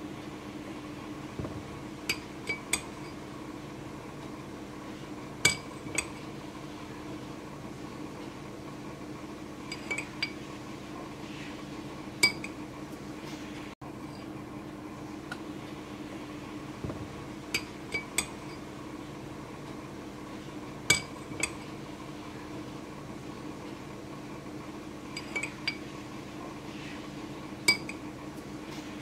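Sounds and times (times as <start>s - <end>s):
metal spoon clinking on dish: 9.7s - 10.4s, 25.1s - 25.8s.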